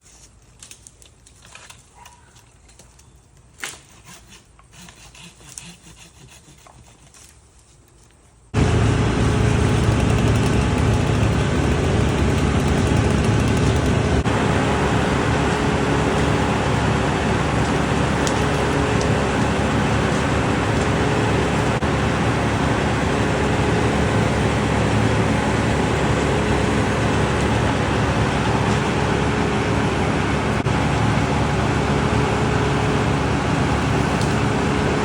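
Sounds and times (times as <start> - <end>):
power equipment engine running: 8.6 - 35.0.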